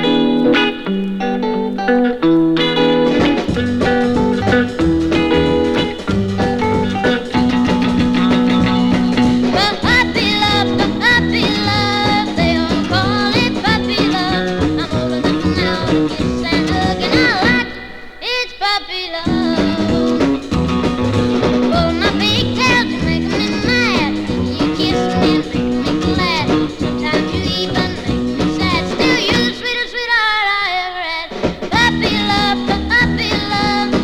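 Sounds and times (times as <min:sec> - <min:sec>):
guitar-led country band: 0:00.0 - 0:30.6, 0:31.3 - 0:34.0
girl singing with vibrato: 0:08.7 - 0:20.5, 0:21.6 - 0:34.0.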